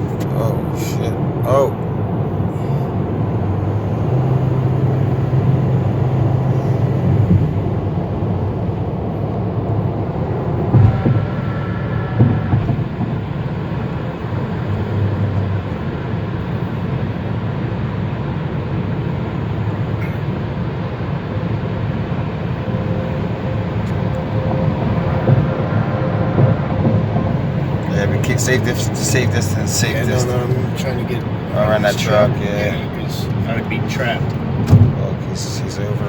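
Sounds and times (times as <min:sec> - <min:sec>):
road and engine noise in car: 0:00.0 - 0:36.0
short knocks or bumps: 0:34.6 - 0:35.0.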